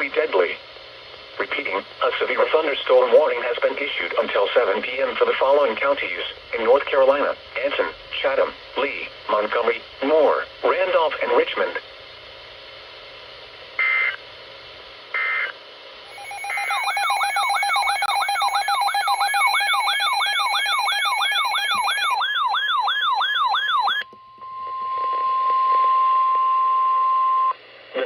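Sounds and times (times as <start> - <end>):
buzzy data bursts: 16.1 - 22.2
steady beep-like tone: 16.1 - 22.2
warbling electronic alarm tone: 16.1 - 27.0.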